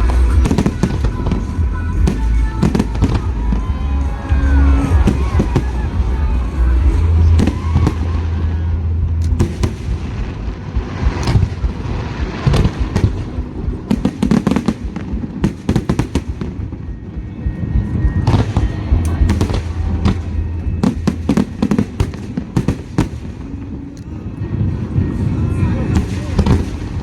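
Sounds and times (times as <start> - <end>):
fireworks bangs and crackles: 0.0 - 27.0.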